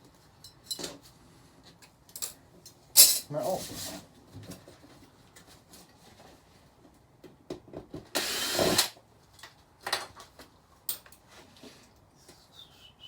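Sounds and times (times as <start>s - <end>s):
cordless drill running: 8.2s - 8.9s.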